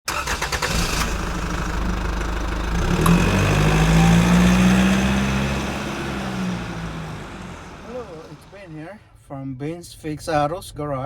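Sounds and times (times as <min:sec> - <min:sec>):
power steering whine: 0:00.1 - 0:08.7
car engine idling: 0:00.1 - 0:08.9.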